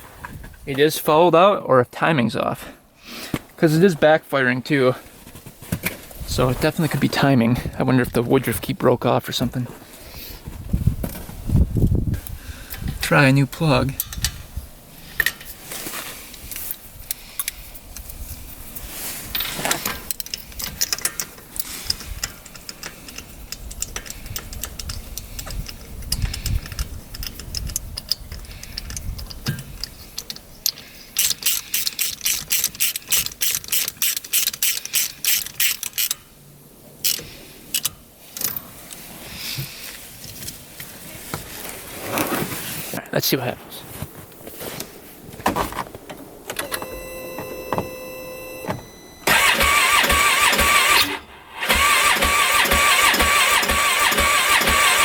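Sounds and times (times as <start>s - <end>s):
tool handling noise: 18.8s - 36.3s, 37.0s - 42.9s
ratchet wrench clicking: 20.1s - 36.2s, 37.0s - 37.9s, 49.3s - 55.0s.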